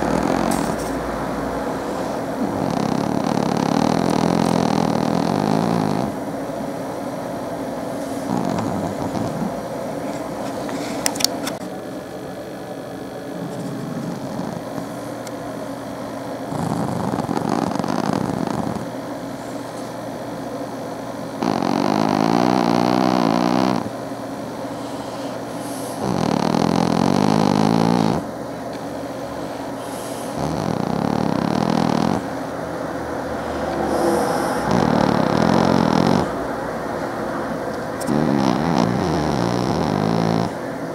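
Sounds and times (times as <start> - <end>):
cat snoring: 0.0 - 1.0, 1.8 - 6.4, 8.0 - 9.7, 13.4 - 15.0, 16.4 - 19.7, 21.4 - 24.0, 24.7 - 28.3, 29.4 - 32.4, 33.3 - 36.6, 38.0 - 40.6
cat breathing: 8.0 - 11.2, 24.7 - 26.1, 29.4 - 32.3, 33.3 - 36.4.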